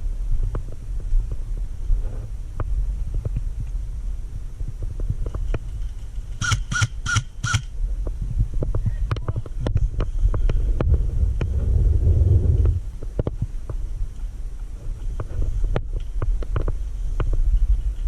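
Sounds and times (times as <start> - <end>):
low rumble: 7.7 - 15.6.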